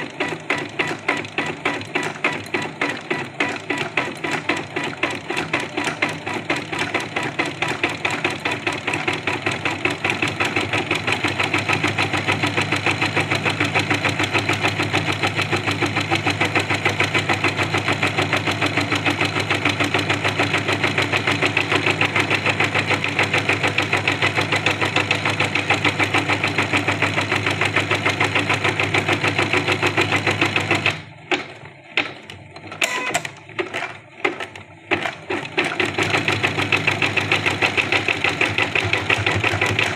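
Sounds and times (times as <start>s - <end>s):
embroidery machine stitching: 0.0s - 39.9s
short mechanical sounds: 31.4s - 35.3s.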